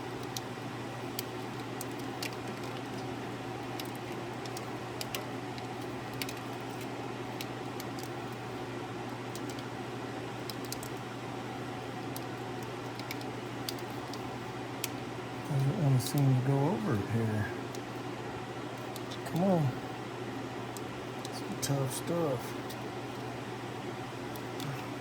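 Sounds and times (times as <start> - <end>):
low background hum: 0.0 - 25.0.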